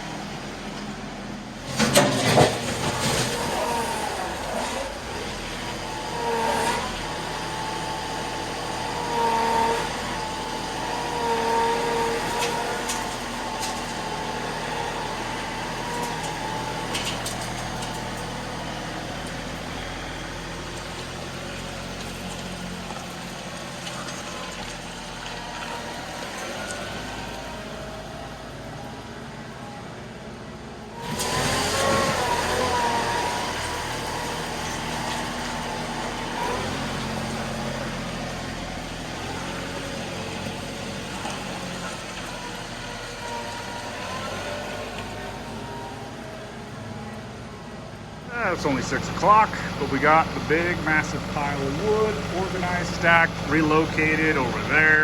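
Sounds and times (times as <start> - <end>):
tractor diesel engine running: 0.0 - 55.0
high whine: 48.3 - 55.0.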